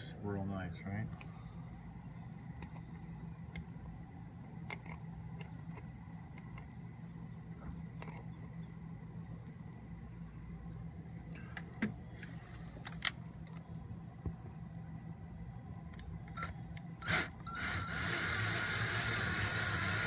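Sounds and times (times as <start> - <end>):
cordless drill whining: 16.4 - 20.0.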